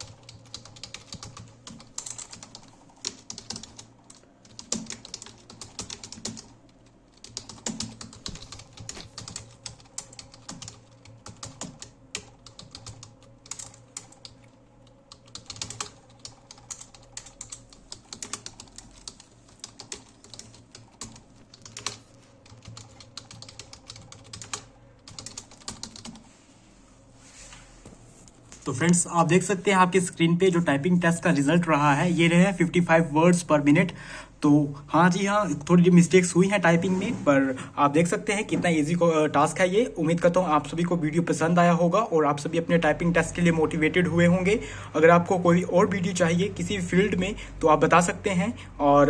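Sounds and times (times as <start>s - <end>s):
typing on computer keyboard: 0.0s - 26.2s.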